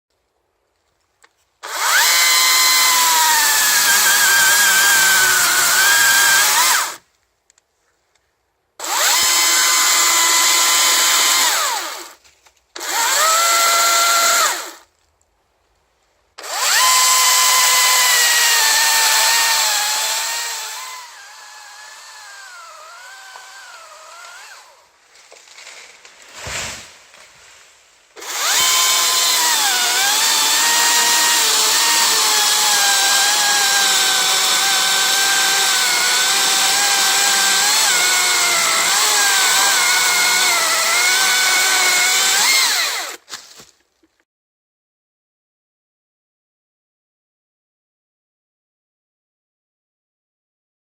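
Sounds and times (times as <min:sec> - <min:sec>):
battery chainsaw cutting wood: 0:01.6 - 0:07.0, 0:08.8 - 0:12.2, 0:12.8 - 0:14.8, 0:16.4 - 0:24.9, 0:28.2 - 0:43.3
thump: 0:26.3 - 0:26.9.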